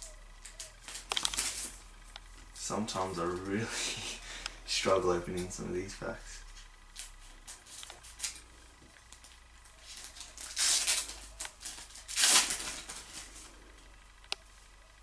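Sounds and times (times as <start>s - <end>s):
wrapper tearing: 9.2s - 13.5s.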